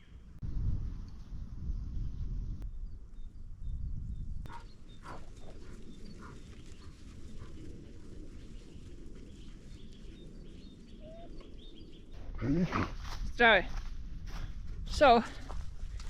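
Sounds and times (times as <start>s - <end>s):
faint bird chirps: 8.5s - 12.1s.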